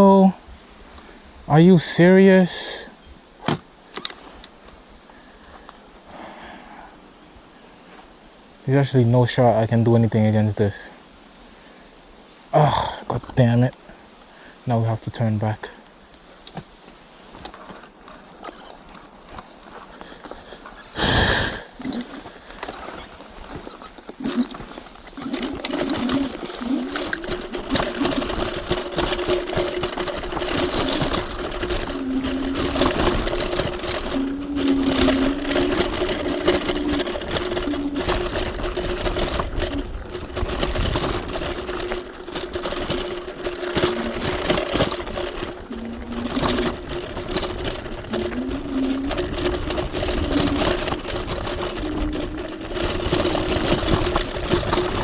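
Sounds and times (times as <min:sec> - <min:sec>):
tyre noise on dirt: 0:00.0 - 0:07.0, 0:12.7 - 0:55.0
rattles and knocks: 0:03.4 - 0:04.8, 0:17.4 - 0:55.0.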